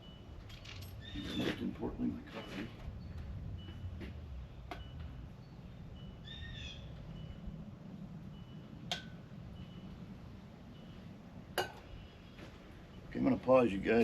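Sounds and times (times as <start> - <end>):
low rumble: 0.0 - 12.1
bird calling: 0.9 - 7.6.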